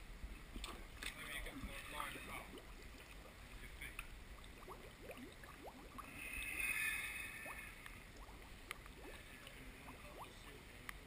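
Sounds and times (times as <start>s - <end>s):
pond water gurgling: 0.0s - 11.0s
rising bubble chirps: 4.3s - 9.2s.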